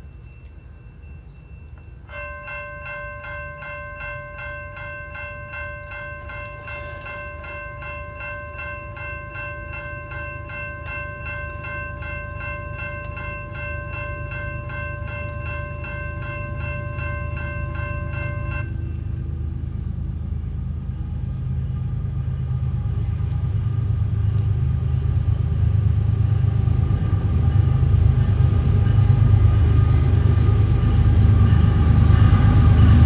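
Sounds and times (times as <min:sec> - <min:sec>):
railroad crossing bell ringing: 0:00.0 - 0:33.0
train rumbling: 0:00.0 - 0:33.0.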